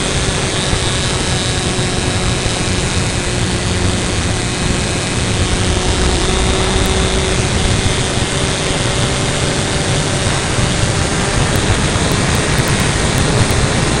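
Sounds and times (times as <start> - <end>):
model plane motor and propeller: 0.0 - 14.0
faint hum: 3.1 - 11.8.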